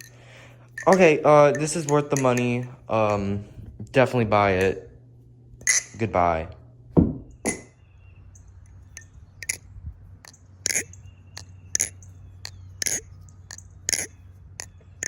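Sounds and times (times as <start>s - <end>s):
butterfly knife handles clacking: 0.0s - 3.4s, 5.6s - 6.0s, 9.0s - 9.6s, 10.2s - 14.7s.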